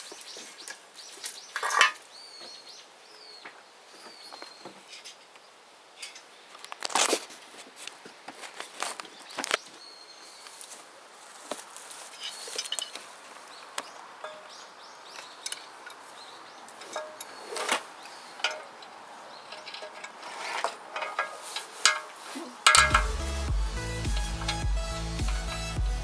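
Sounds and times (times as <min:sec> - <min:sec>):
faint steady hiss: 0:00.0 - 0:26.0
light knocks and clinks: 0:16.7 - 0:23.2
music: 0:22.8 - 0:26.0.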